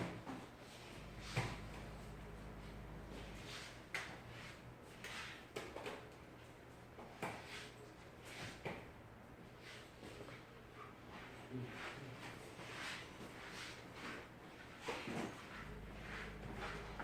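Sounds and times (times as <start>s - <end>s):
low hum: 1.0s - 3.8s, 15.6s - 17.0s.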